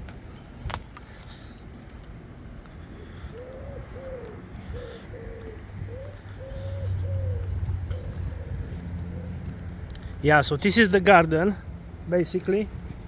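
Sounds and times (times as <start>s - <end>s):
bird cooing: 2.9s - 9.9s.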